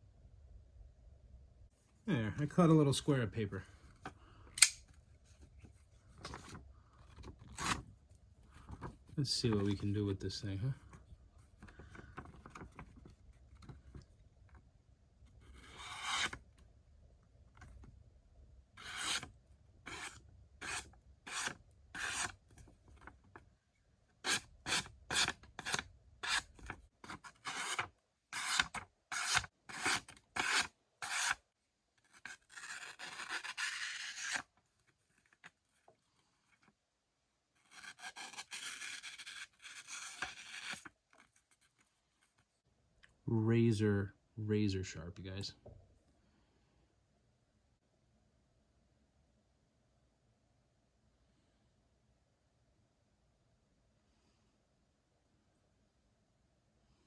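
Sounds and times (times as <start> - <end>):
knife slicing paper: 18.8 - 19.3, 27.1 - 31.4, 32.1 - 34.5, 37.6 - 40.9.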